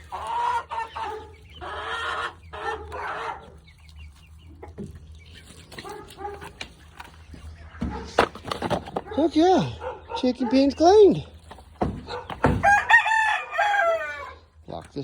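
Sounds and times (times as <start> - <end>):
chicken clucking loudly: 0.0 - 14.6
sharp knocks: 11.8 - 12.7.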